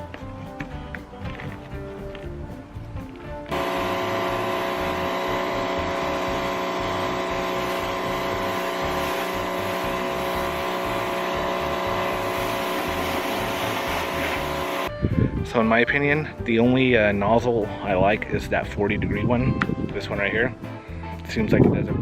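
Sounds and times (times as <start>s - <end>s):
electric pressure washer whining: 3.5s - 14.9s.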